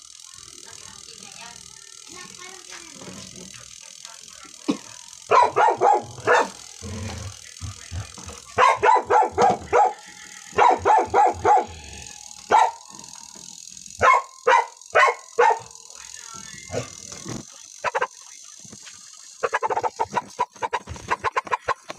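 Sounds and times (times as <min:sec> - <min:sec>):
dog barking: 0:05.3 - 0:06.6, 0:08.6 - 0:10.0, 0:10.6 - 0:11.8, 0:12.5 - 0:12.8, 0:14.0 - 0:15.7.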